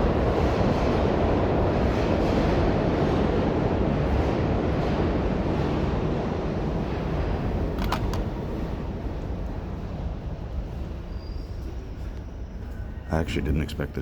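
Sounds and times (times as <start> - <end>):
subway train rumble: 0.0 - 14.0.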